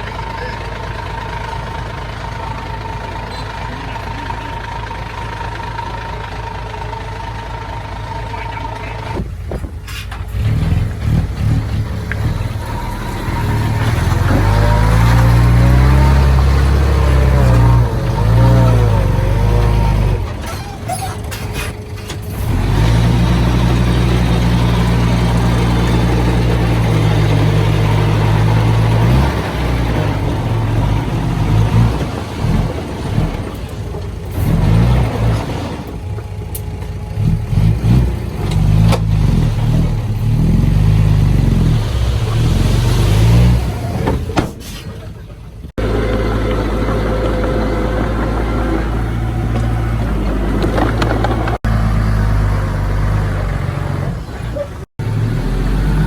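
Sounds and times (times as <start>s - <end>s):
steady engine running: 0.0s - 42.4s, 45.2s - 56.0s
heavy diesel machinery working: 0.0s - 56.0s.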